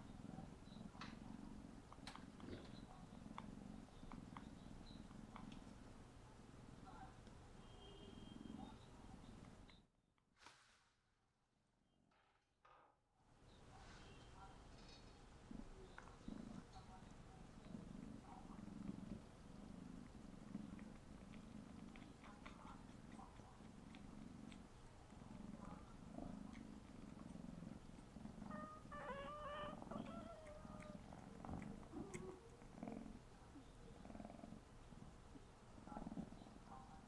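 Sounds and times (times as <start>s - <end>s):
kitten purring: 0.0s - 7.3s, 14.6s - 37.0s
kitten wavering call: 28.5s - 31.0s.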